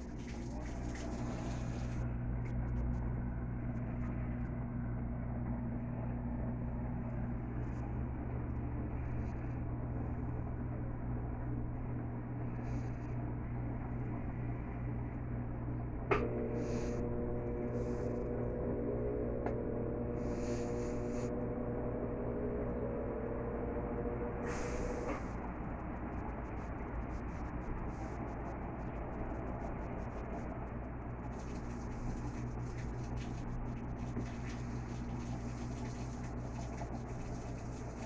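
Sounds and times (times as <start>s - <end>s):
washing machine motor hum: 0.0s - 38.0s
higher steady tone: 16.1s - 25.2s.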